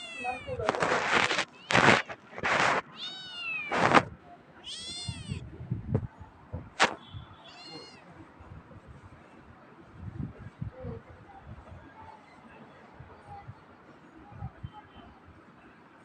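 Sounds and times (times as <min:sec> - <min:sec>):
cat meowing: 0:00.0 - 0:04.0, 0:04.6 - 0:05.4, 0:07.4 - 0:08.2
short noisy bursts and clicks: 0:00.6 - 0:03.0.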